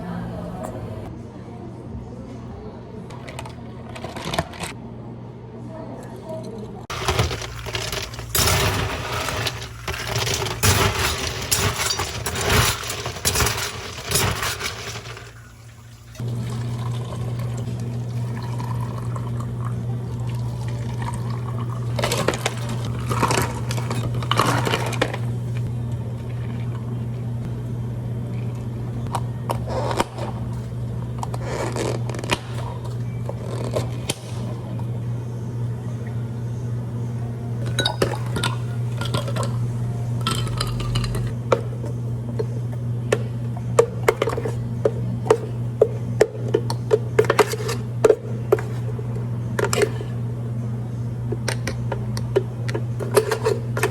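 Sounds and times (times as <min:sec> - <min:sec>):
ice and liquid pouring: 0:06.9 - 0:19.6
machine humming: 0:06.9 - 0:53.9.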